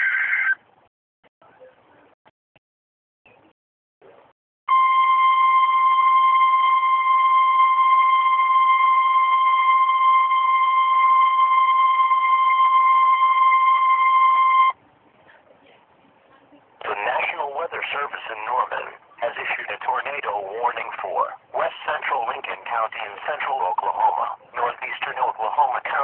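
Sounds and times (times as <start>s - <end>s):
steady electronic alarm tone: 4.7s - 14.8s.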